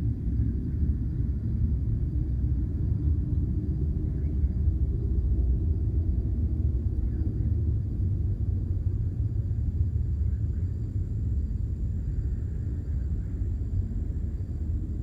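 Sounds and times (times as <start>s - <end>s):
low rumbling drone overhead: 0.0s - 15.0s.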